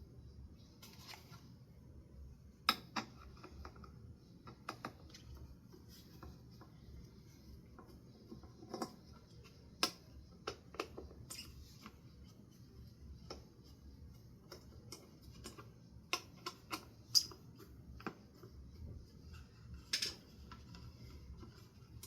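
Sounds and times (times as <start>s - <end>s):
ceiling fan parts clicking: 2.6s - 22.0s.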